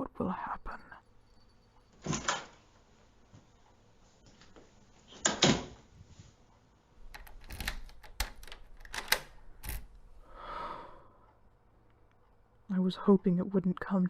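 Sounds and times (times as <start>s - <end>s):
sharp irregular clicks and knocks: 7.0s - 10.0s.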